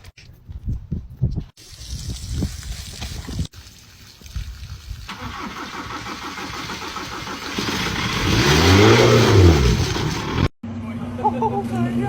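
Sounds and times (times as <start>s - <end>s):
car engine starting and revving: 5.1s - 10.5s.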